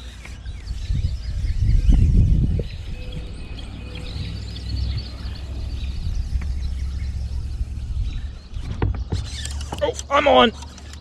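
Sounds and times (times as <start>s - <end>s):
small birds chirping: 0.0s - 11.0s
low rumble: 0.4s - 9.1s.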